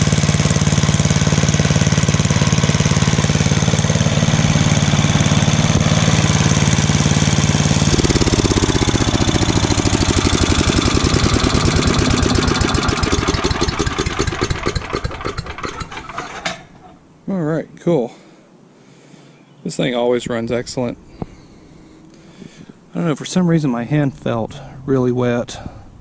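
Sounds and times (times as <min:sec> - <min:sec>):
chipper engine running: 0:00.0 - 0:17.0.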